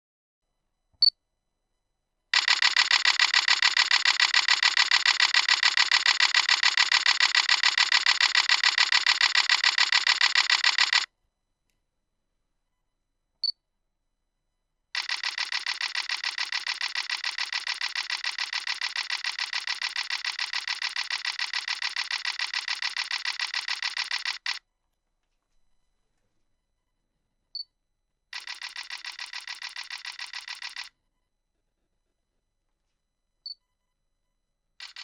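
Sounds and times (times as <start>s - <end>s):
camera shutter clicks: 2.4s - 11.1s, 15.0s - 24.6s, 28.4s - 30.9s.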